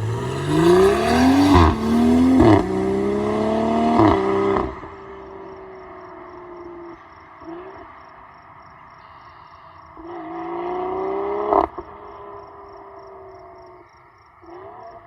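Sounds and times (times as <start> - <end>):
car engine revving: 0.0 - 6.7, 10.0 - 13.6.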